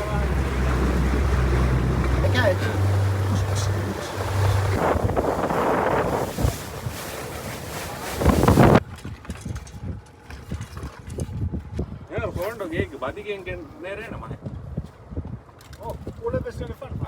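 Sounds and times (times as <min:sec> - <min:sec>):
low boat engine hum: 0:00.0 - 0:08.8
wind buffeting microphone: 0:00.0 - 0:17.0.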